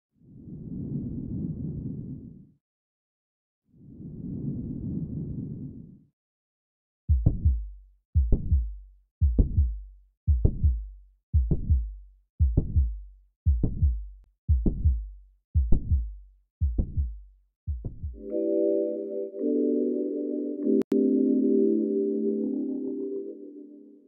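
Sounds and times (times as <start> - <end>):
heartbeat through stethoscope: 7.1 - 18.2.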